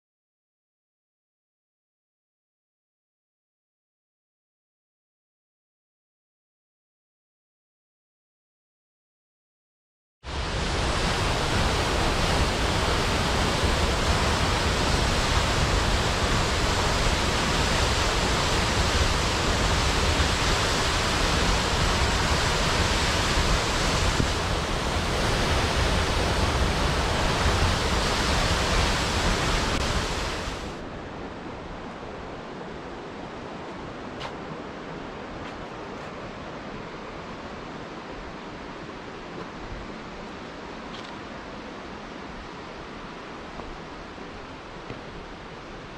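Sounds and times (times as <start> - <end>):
rushing water: 10.3 - 45.9.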